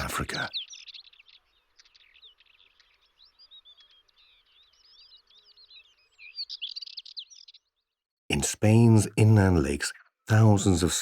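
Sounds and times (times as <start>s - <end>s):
small birds twittering: 0.0s - 8.0s.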